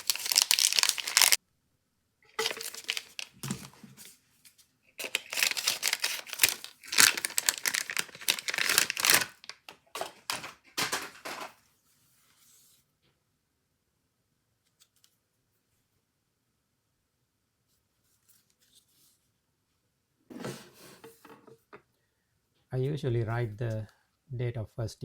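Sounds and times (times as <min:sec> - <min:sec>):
plastic bag tearing and crinkling: 0:00.0 - 0:01.4, 0:02.3 - 0:03.8, 0:05.0 - 0:11.5.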